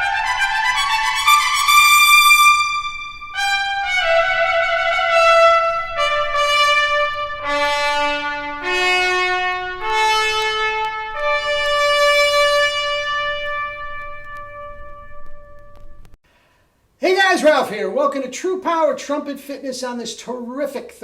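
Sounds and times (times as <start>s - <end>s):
solo trumpet playing: 0.0s - 16.1s.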